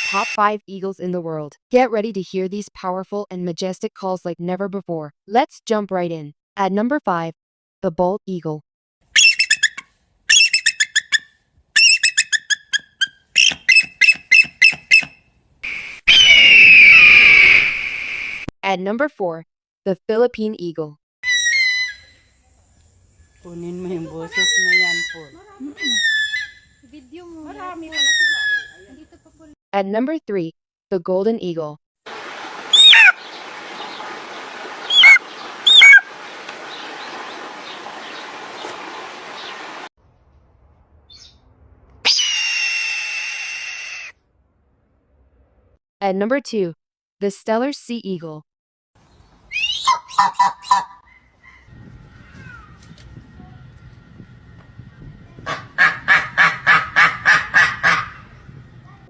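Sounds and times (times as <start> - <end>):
eagle piping calls: 9.2 - 11.2, 11.8 - 15.1, 32.3 - 39.7, 49.5 - 51.7, 55.5 - 58.4
eagle yelping: 9.2 - 11.2, 16.1 - 17.7, 25.8 - 26.6, 32.7 - 33.3, 34.8 - 36.1, 49.6 - 52.8
eagle scream falling in pitch: 15.7 - 18.4, 32.7 - 33.2, 34.9 - 36.0, 42.1 - 44.1.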